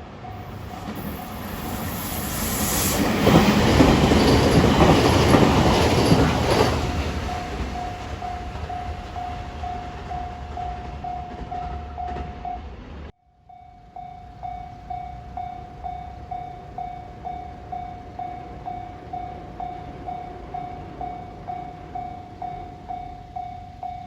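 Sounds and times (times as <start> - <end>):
passing train rumble: 0.0 - 13.2, 13.8 - 24.0
level-crossing alarm bell ringing: 0.2 - 12.7.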